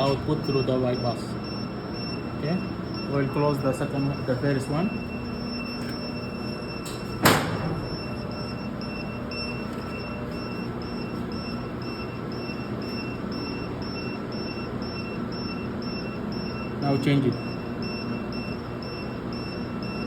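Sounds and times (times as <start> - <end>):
electrical cabinets humming: 0.0 - 20.0
circuit breaker clack: 6.7 - 8.3.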